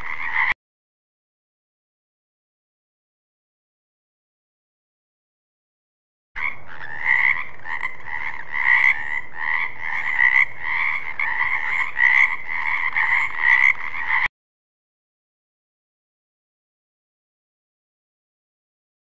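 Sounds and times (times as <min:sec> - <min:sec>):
frog croaking: 0:00.0 - 0:00.5, 0:06.4 - 0:14.3.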